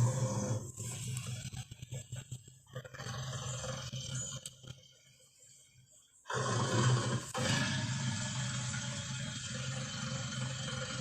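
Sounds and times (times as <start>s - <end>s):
gorilla roar: 0.0s - 1.0s, 6.3s - 11.0s.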